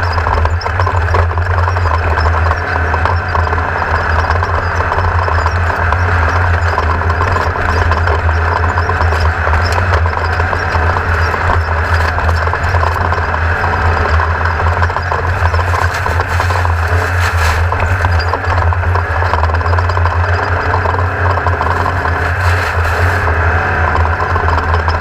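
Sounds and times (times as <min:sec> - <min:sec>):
racing engine running: 0:00.0 - 0:25.0
rough rushing noise: 0:06.0 - 0:25.0.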